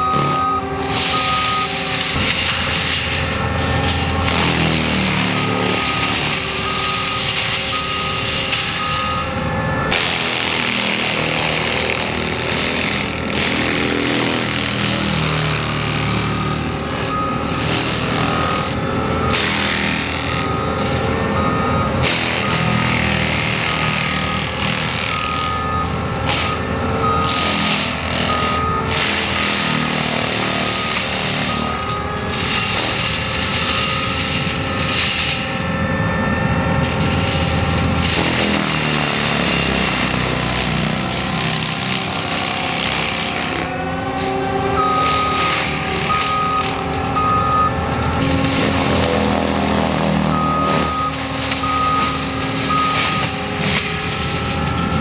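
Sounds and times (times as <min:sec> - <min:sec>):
backup alarm beeping: 0:00.0 - 0:01.8, 0:03.3 - 0:10.0, 0:15.7 - 0:22.8, 0:23.6 - 0:36.6, 0:44.6 - 0:55.0
track loader with mulcher running: 0:00.0 - 0:55.0.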